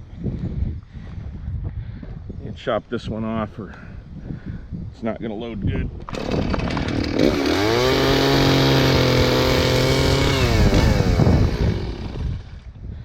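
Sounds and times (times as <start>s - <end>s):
chainsaw revving while cutting: 6.1s - 12.7s.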